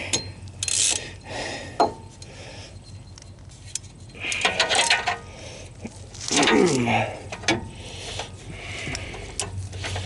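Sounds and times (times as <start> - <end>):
metal hand tools clinking: 0.1 - 1.1.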